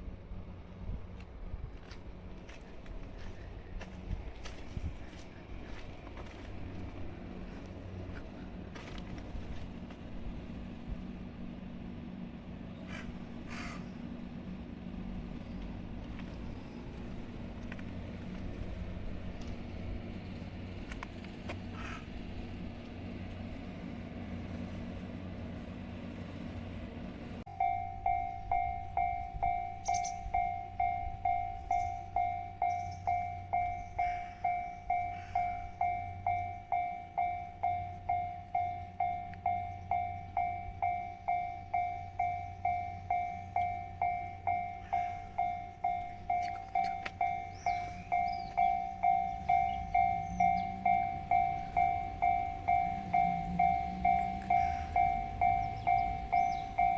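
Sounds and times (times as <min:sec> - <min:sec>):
level-crossing warning bell clanging: 0:15.0 - 0:21.6, 0:22.2 - 0:56.9.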